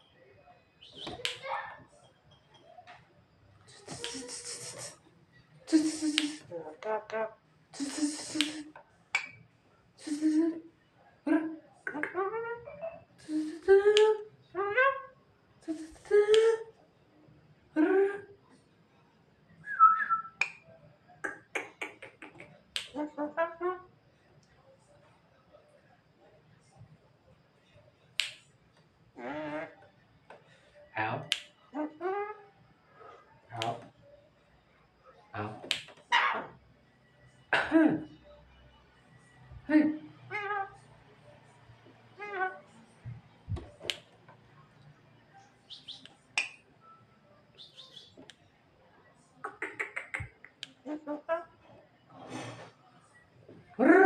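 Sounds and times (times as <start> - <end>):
bird whistle: 19.7 - 20.4, 47.6 - 48.2
bird harsh clicks: 49.4 - 50.7.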